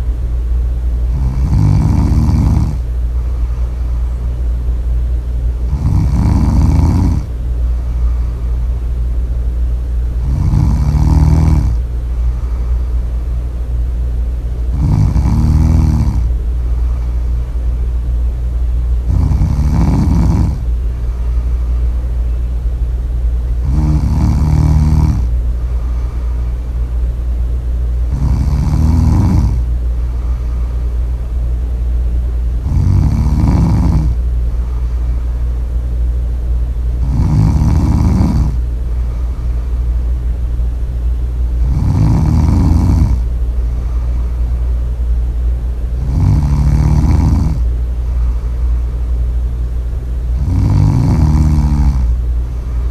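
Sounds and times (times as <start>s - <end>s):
steady low hum: 0.0s - 52.9s
loud snoring: 1.1s - 2.9s, 5.6s - 7.3s, 10.2s - 12.7s, 14.7s - 17.2s, 19.0s - 20.7s, 23.5s - 26.5s, 28.0s - 30.8s, 32.6s - 35.2s, 37.0s - 39.6s, 41.6s - 44.2s, 46.0s - 47.7s, 50.3s - 52.9s.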